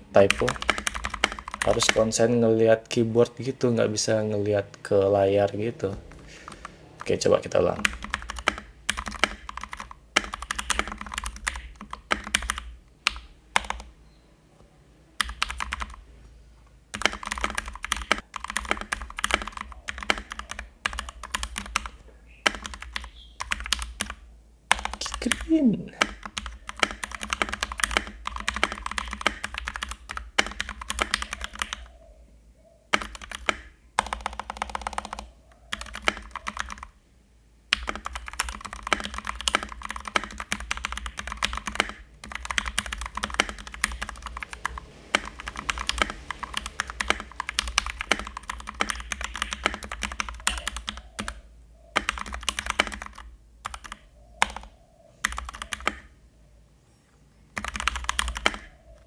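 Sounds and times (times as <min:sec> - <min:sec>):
mechanical keyboard typing: 0:00.2 - 0:02.2, 0:06.5 - 0:13.9, 0:15.2 - 0:16.0, 0:16.9 - 0:31.9, 0:32.9 - 0:37.0, 0:37.7 - 0:56.1, 0:57.5 - 0:59.0.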